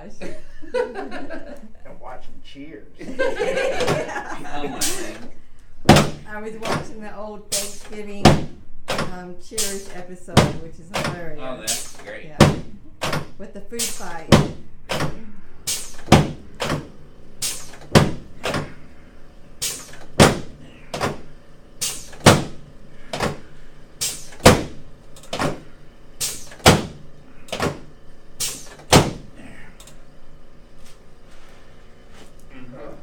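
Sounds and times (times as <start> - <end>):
sharp thuds on a table: 5.9 - 6.9, 12.4 - 13.3, 14.3 - 15.2, 16.1 - 16.9, 24.4 - 25.6, 26.6 - 27.8, 28.9 - 29.3.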